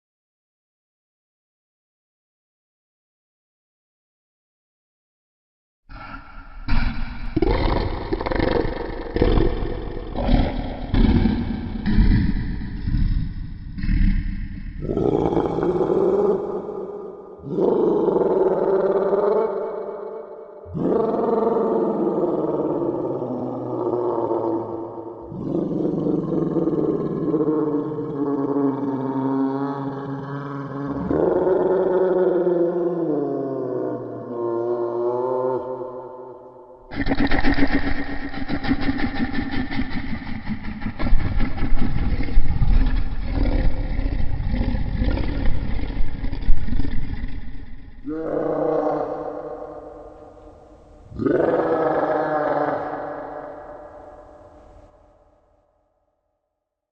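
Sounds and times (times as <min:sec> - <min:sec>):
deep creature call: 0:05.9 - 0:55.6.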